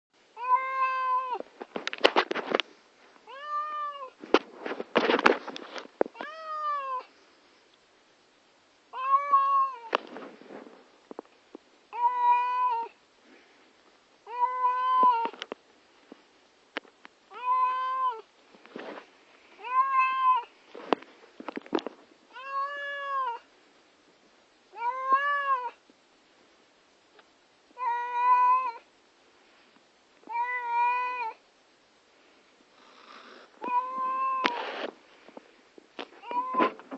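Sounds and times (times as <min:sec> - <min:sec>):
cat meowing: 0:00.4 - 0:01.4, 0:03.3 - 0:04.2, 0:06.2 - 0:07.1, 0:08.9 - 0:09.9, 0:11.9 - 0:13.0, 0:14.2 - 0:15.3, 0:17.3 - 0:18.3, 0:19.6 - 0:20.5, 0:22.3 - 0:23.4, 0:24.8 - 0:25.8, 0:27.8 - 0:28.8, 0:30.3 - 0:31.4, 0:33.1 - 0:34.6, 0:36.2 - 0:36.8.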